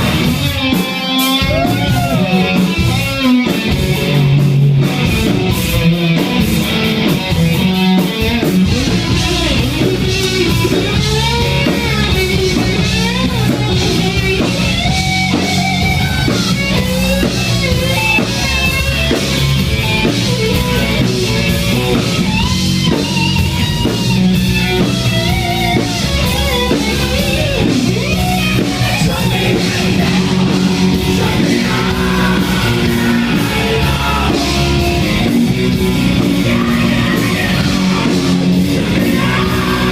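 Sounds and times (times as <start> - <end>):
live rock band: 0.0 - 39.9
person singing: 28.8 - 35.1, 36.1 - 39.9.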